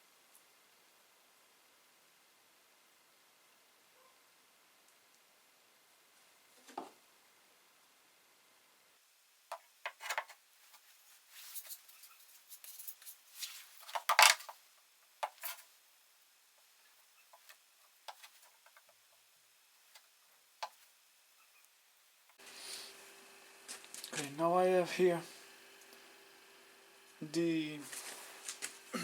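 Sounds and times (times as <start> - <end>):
parts handled on a workbench: 9.5 - 14.6, 15.2 - 15.7.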